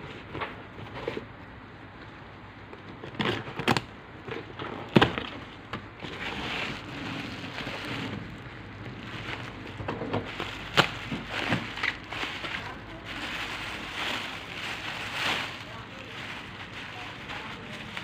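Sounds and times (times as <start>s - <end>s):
packaging rustling: 2.7s - 18.0s
packaging clicks and knocks: 9.2s - 12.6s.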